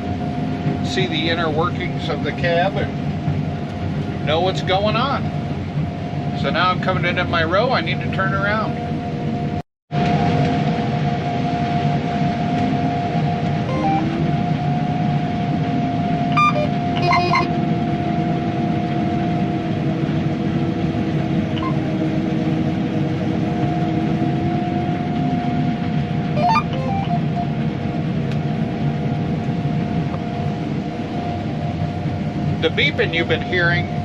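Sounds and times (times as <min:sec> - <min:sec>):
combine harvester drone in cab: 0:00.0 - 0:34.0
electronic beeps: 0:13.7 - 0:14.2, 0:16.3 - 0:17.5, 0:21.6 - 0:21.9, 0:26.4 - 0:27.6
short rising bloop: 0:13.7 - 0:14.4, 0:16.4 - 0:17.5, 0:21.6 - 0:21.9, 0:26.4 - 0:27.6.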